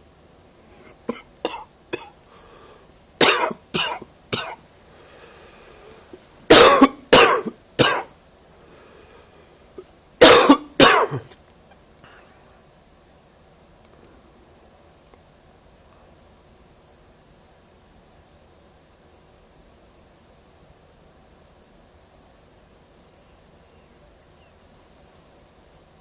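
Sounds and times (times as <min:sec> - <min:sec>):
person coughing: 0:00.8 - 0:02.2, 0:03.2 - 0:04.6, 0:06.5 - 0:08.1, 0:10.2 - 0:11.3.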